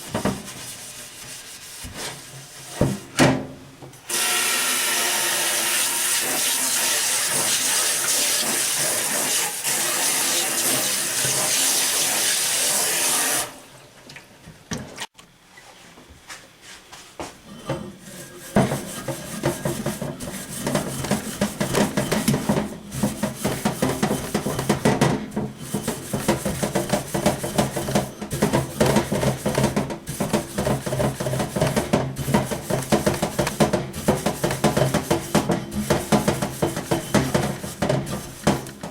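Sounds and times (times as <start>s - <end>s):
water spraying from sink spray head: 5.5s - 12.8s
metal scrubber scraping cookware: 17.9s - 38.9s.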